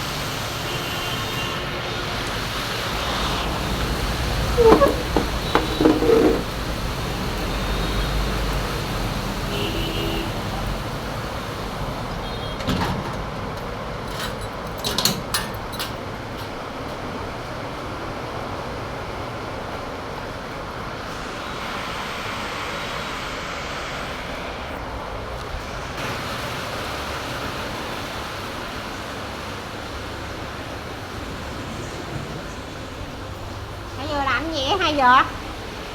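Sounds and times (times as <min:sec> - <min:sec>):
heavy rain hissing: 0:00.0 - 0:12.6, 0:17.2 - 0:35.9.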